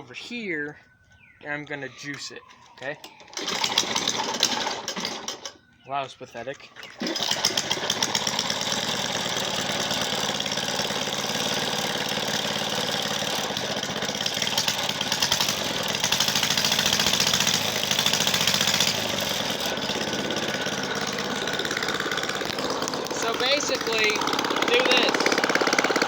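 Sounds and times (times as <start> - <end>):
lawnmower engine running fast: 3.4 - 5.5, 7.0 - 26.0.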